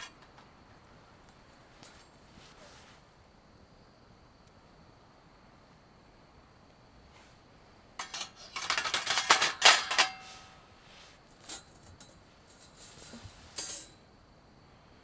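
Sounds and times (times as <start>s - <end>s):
small hard objects rattling: 8.0s - 10.4s.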